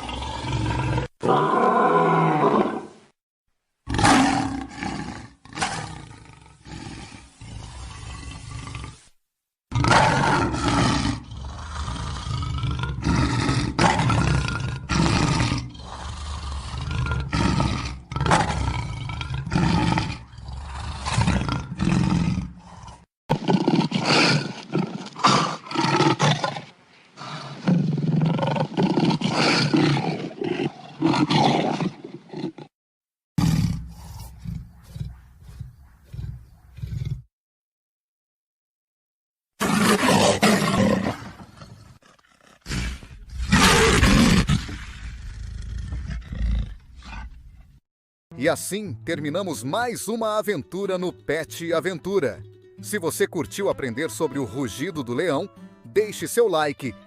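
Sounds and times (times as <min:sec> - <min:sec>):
lions roaring and grunting: 0:09.8 - 0:32.7, 0:33.4 - 0:37.3, 0:39.6 - 0:47.4.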